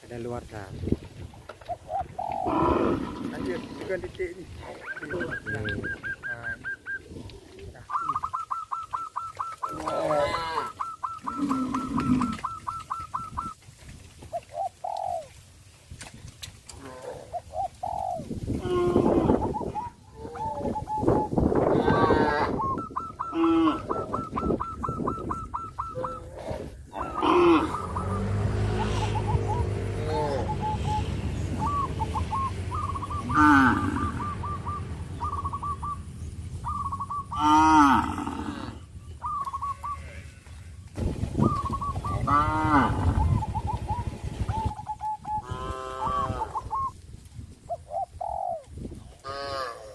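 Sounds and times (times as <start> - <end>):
dove cooing: 1.6 - 4.0, 4.6 - 13.6, 14.3 - 15.4, 16.8 - 40.1, 41.3 - 47.0, 47.6 - 49.9
cattle mooing: 9.7 - 12.4, 26.3 - 30.7, 33.2 - 34.5, 37.4 - 38.8, 42.2 - 43.2.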